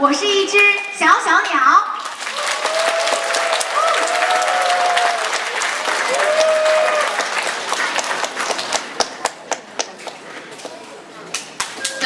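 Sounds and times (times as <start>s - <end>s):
audience applauding: 2.0s - 10.3s
crowd cheering shouts: 2.2s - 7.4s.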